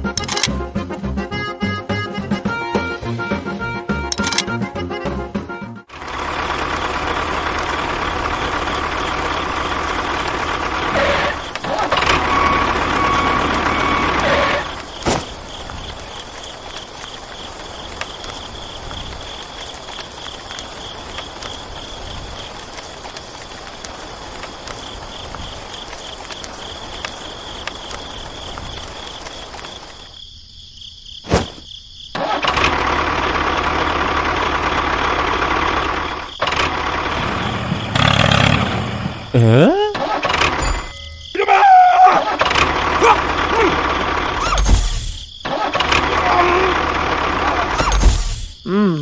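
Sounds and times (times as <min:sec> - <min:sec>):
vehicle engine running: 0:05.9 - 0:18.3, 0:32.4 - 0:39.3, 0:42.4 - 0:44.8, 0:46.0 - 0:48.4.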